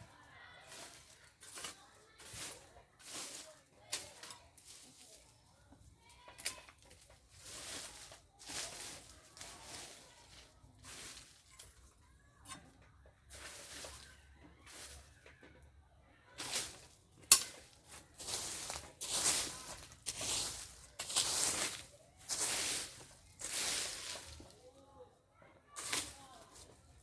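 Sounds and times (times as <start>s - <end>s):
rustling scraping strokes: 7.3s - 11.7s, 13.3s - 14.1s, 16.4s - 24.6s.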